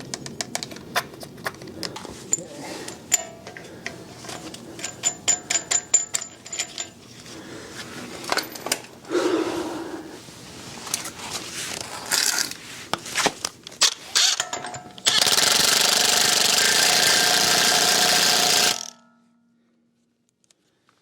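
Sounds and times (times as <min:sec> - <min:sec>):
hand tools clinking on metal: 0:01.9 - 0:07.4, 0:14.2 - 0:15.4
loud steady mechanical noise: 0:15.0 - 0:18.8.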